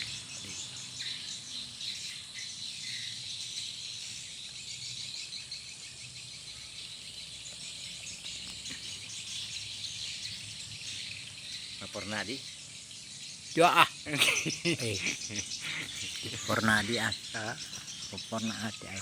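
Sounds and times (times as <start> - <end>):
swiftlets twittering: 13.5 - 19.0.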